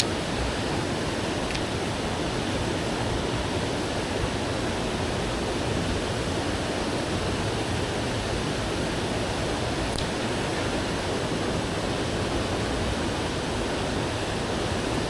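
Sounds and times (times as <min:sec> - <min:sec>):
stream rushing over rocks: 0:00.0 - 0:15.0.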